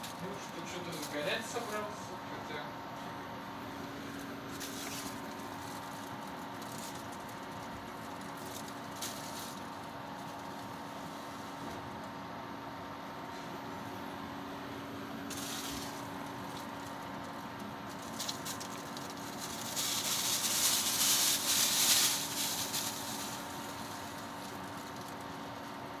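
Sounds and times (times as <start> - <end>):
fan humming with faint whine: 0.0 - 26.0
rushing air with light rattling: 15.3 - 25.6.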